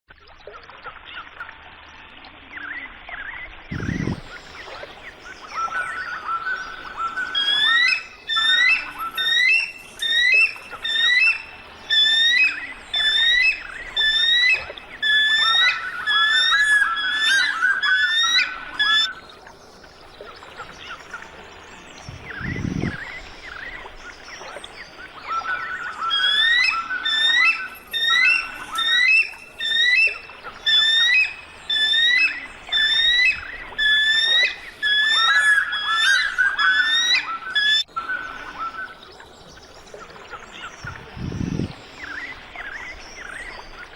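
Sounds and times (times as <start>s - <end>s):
eagle piping chirps: 3.7s - 19.1s, 22.0s - 39.2s, 40.0s - 43.9s.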